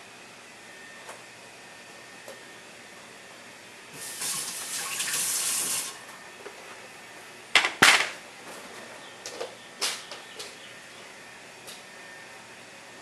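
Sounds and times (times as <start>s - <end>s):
tap water running: 3.9s - 6.0s.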